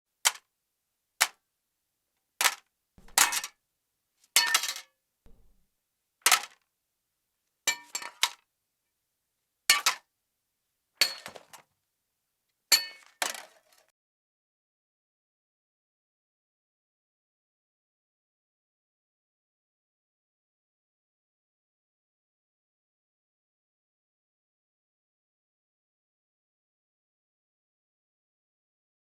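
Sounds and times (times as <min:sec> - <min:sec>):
metal clanks: 0:03.0 - 0:03.5, 0:04.4 - 0:05.6.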